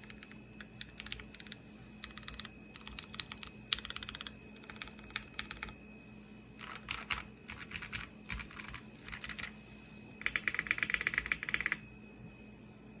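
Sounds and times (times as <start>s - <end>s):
mechanical keyboard typing: 0.0s - 5.7s, 6.6s - 9.5s, 10.2s - 11.8s.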